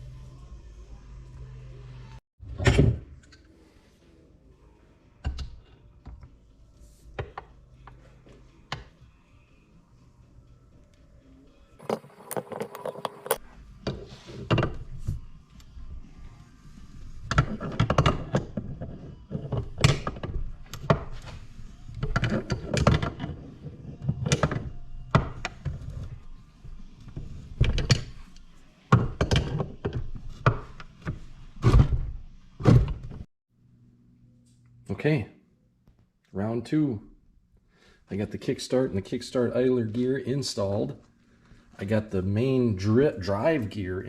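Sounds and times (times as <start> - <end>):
metal parts and tools clunking: 17.2 - 26.3.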